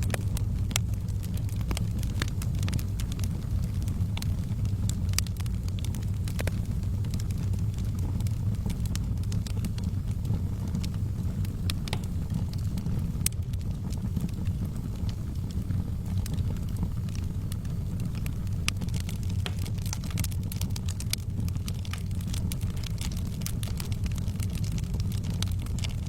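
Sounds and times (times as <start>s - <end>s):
fire popping and snapping: 0.0s - 26.0s
low rumble of burning: 0.0s - 26.0s
wood fire crackling: 0.0s - 26.0s.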